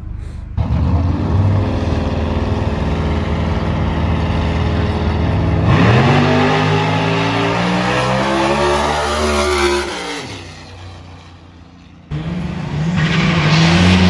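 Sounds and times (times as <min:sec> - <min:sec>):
car engine revving: 0:00.0 - 0:14.0.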